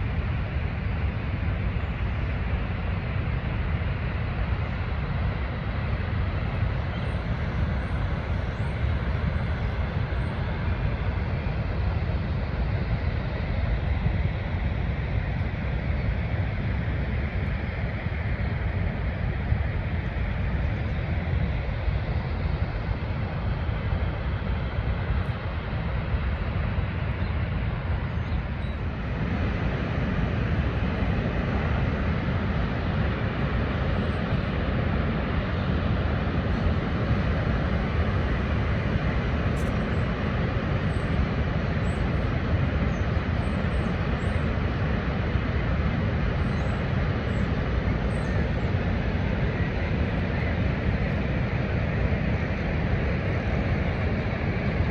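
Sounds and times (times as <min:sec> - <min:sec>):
waterfall rumbling rush: 0:26.6 - 0:54.9.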